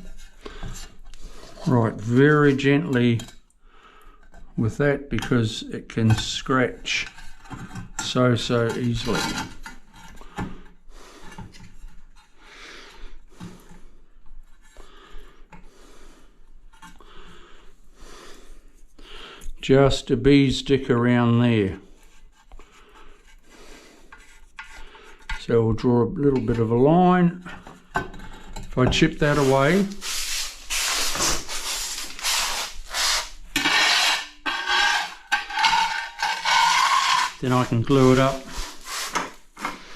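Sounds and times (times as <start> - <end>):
hand tool rasping on tile: 29.2 - 39.9
ringing scrape: 33.6 - 38.5.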